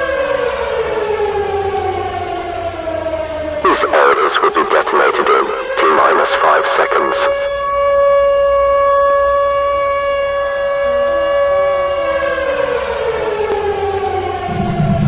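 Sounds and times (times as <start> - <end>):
warning siren winding down: 0.0 - 3.6, 7.4 - 15.0
low rumble: 14.5 - 15.0.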